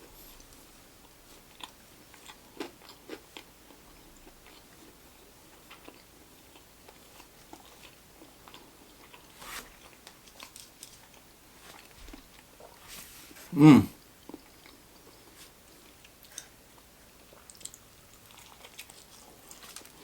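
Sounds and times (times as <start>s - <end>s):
person chewing crunchy food: 1.5s - 3.5s, 5.6s - 11.9s, 17.2s - 20.0s.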